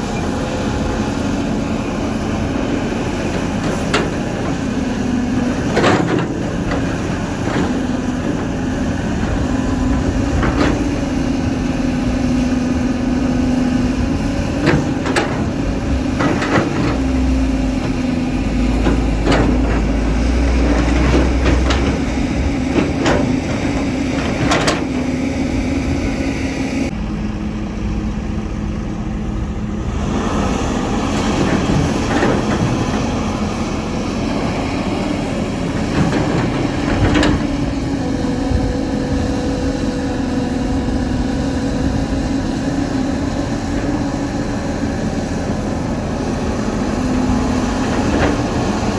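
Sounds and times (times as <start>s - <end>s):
excavator diesel engine running: 0.0s - 48.9s
knocks and clanks from digging: 14.6s - 25.1s.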